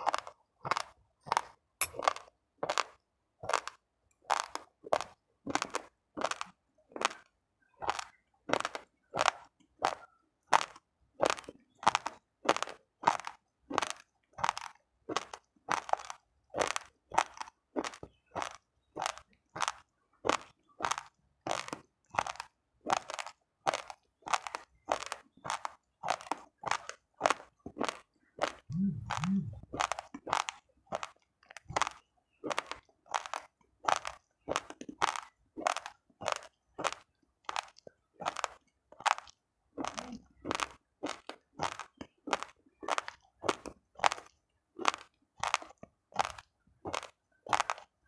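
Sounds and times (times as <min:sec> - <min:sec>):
chewing raw rice crunching: 0:00.0 - 0:48.0.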